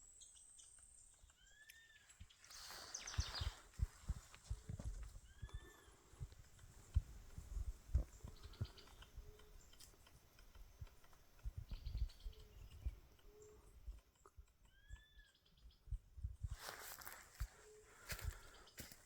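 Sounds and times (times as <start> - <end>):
birds chirping trills: 0.0 - 19.0
footsteps on forest trail: 1.1 - 15.8, 16.4 - 19.0
bird whistled calls: 1.4 - 3.6.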